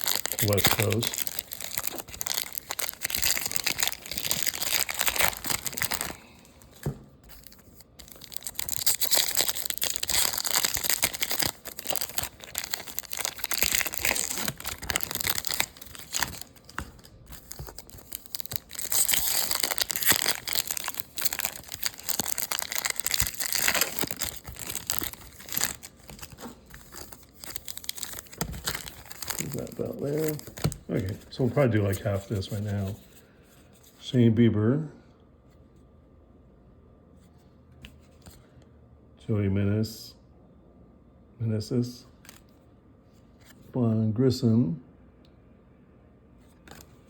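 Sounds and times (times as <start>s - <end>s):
plastic wrappers crinkling and tearing: 0.0s - 33.0s.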